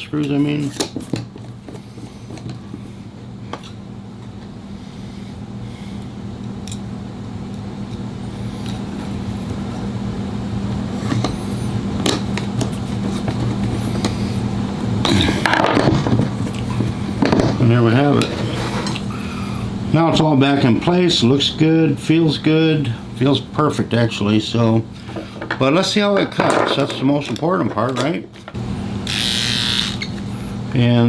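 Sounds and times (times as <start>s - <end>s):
electric motor hum: 28.5s - 30.7s.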